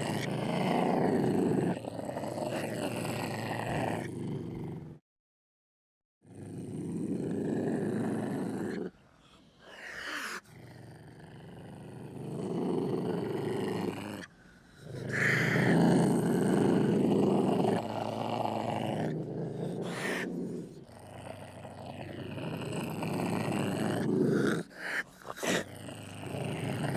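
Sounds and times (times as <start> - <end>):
dinosaur growling roars: 25.4 - 26.9.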